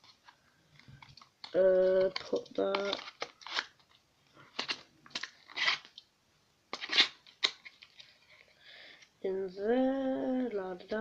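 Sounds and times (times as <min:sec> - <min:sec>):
packaging crinkling: 0:00.0 - 0:06.0.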